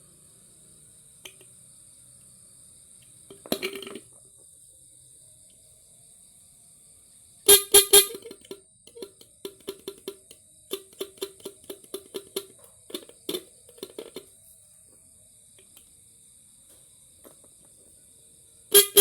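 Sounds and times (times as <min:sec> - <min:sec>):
electric car horn beeping: 0:07.5 - 0:08.4, 0:18.7 - 0:19.0.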